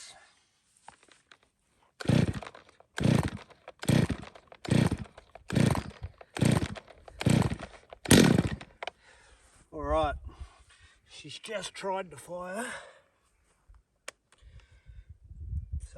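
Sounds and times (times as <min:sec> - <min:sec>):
chainsaw engine trying to fire: 0:02.0 - 0:08.9
chainsaw starter cord pulls: 0:02.0 - 0:09.0.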